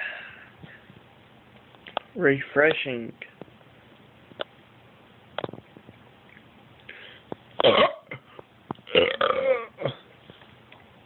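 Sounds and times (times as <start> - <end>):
person burping: 7.6 - 8.3, 8.9 - 10.1.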